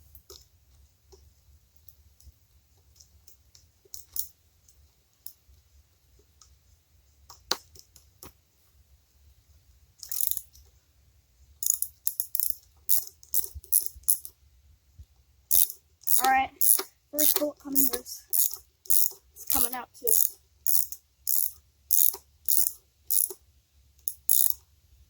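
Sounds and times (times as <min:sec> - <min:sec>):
ratchet wrench clicking: 0:10.0 - 0:10.5, 0:11.6 - 0:14.3, 0:15.5 - 0:23.4, 0:24.0 - 0:24.6.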